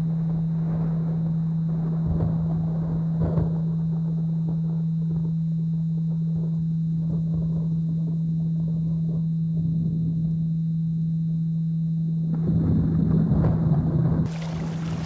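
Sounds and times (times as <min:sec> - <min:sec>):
thunder rumbles: 0:12.3 - 0:15.0
rain: 0:12.4 - 0:15.0
humming binaural tone: 0:14.3 - 0:15.0.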